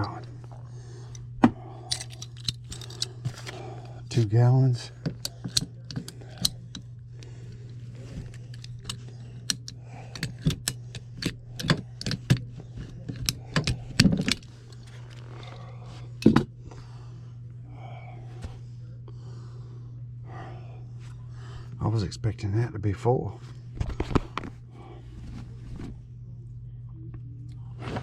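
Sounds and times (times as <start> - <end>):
steady low hum: 0.0 - 28.0
tools clicking on plastic parts: 1.9 - 3.6, 5.0 - 6.9, 7.9 - 15.2.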